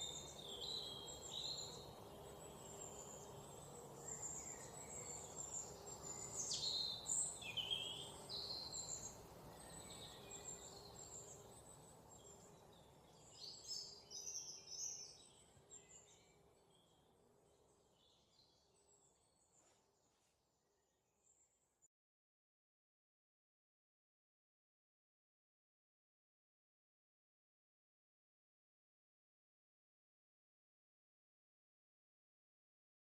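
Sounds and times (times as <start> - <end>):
low steady hiss: 0.0 - 21.9.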